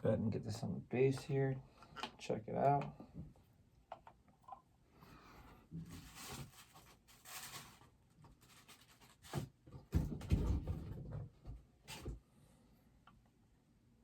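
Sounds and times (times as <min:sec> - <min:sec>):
plastic packaging scraping and rustling: 0:05.8 - 0:09.6.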